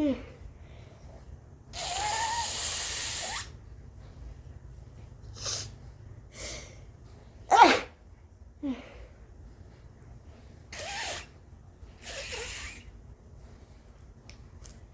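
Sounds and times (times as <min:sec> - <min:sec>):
person blowing nose: 0:01.7 - 0:03.6, 0:10.7 - 0:11.4, 0:12.0 - 0:13.0
loud sneeze: 0:07.5 - 0:08.0.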